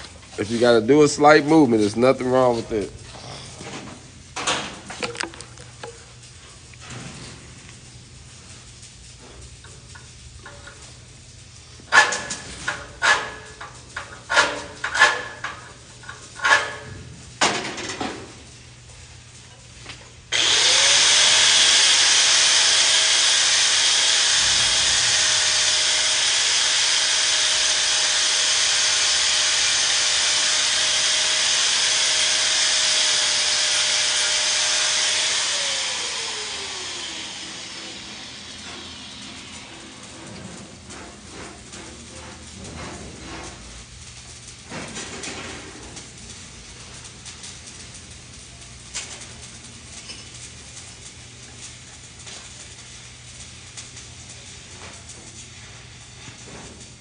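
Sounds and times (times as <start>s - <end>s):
angle grinder whining: 20.3s - 40.1s.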